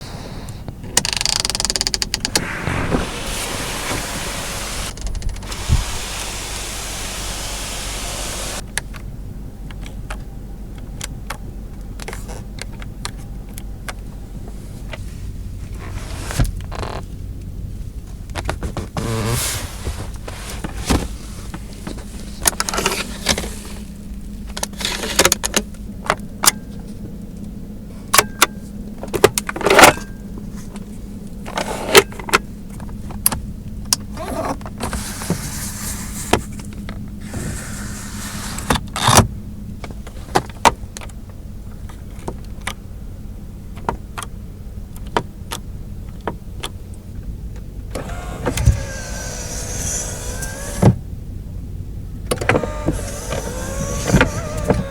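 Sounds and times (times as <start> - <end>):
steady low hum: 2.1 - 12.0
mechanism whirring: 47.9 - 51.0, 52.3 - 54.9.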